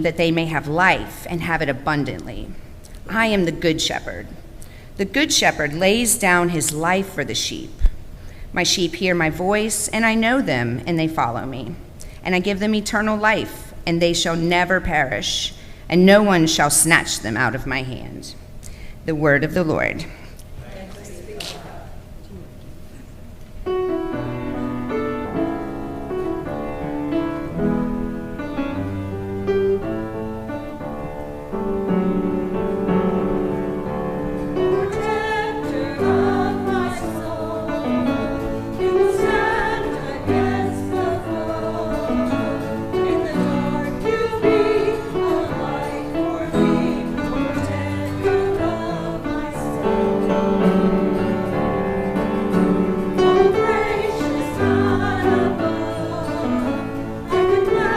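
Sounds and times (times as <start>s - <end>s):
keyboard chords: 23.6s - 57.9s
choir singing: 34.2s - 57.9s.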